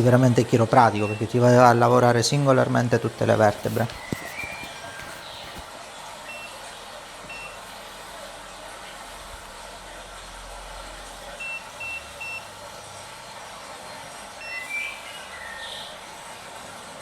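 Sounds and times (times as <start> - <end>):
steady hiss: 0.0 - 17.0
high control panel beeps: 0.6 - 1.9, 6.2 - 6.7, 7.3 - 7.6, 11.4 - 12.5, 14.4 - 15.1.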